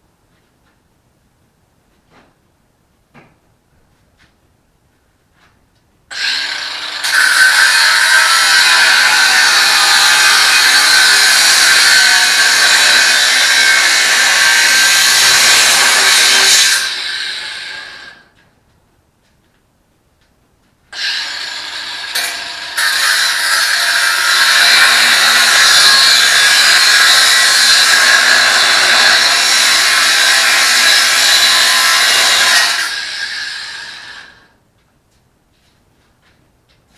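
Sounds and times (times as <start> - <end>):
angle grinder cutting steel: 6.1 - 18.3, 20.9 - 34.5.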